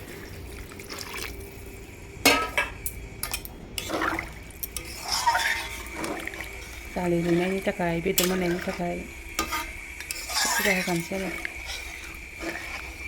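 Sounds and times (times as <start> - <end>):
water pouring into pan: 3.8 - 13.0.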